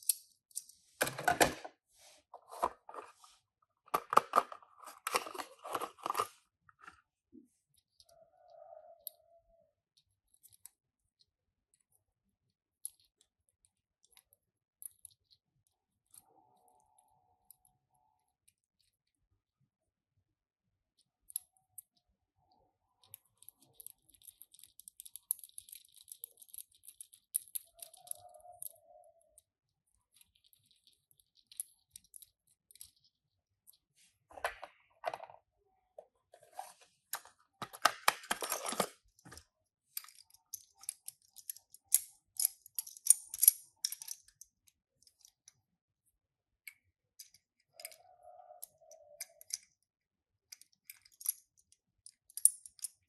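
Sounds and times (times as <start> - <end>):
toy cars and packaging handled: 0.0 - 9.2, 20.9 - 53.0.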